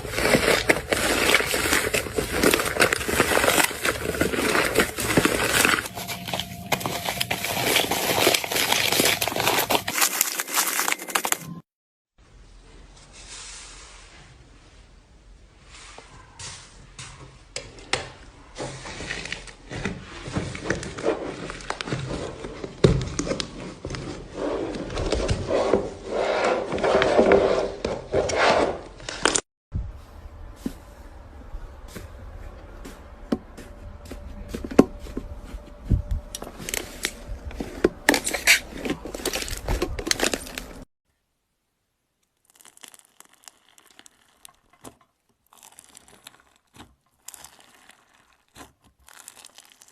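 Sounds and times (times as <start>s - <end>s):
slime crackling and popping: 42.3s - 49.9s.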